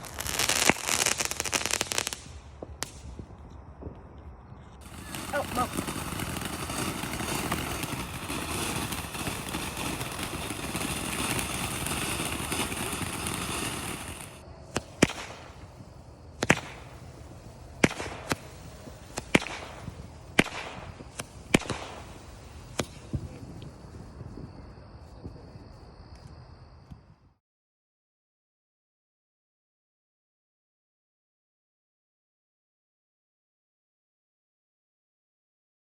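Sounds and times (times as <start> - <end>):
fireworks bangs: 0.0 - 4.2, 4.8 - 24.5
fireworks hissing and crackling: 0.0 - 27.0.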